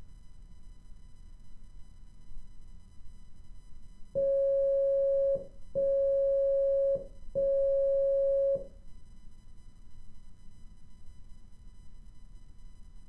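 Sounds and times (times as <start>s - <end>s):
long morse code beeps: 4.2s - 8.7s.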